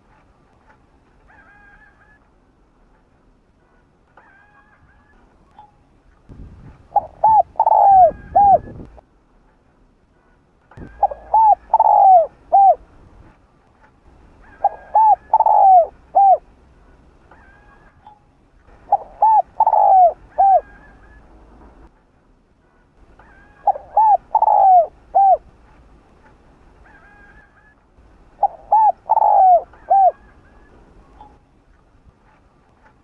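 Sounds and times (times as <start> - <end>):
dove cooing: 6.9 - 8.9, 10.8 - 12.8, 14.4 - 16.5, 18.8 - 21.3, 23.2 - 25.5, 26.8 - 31.4.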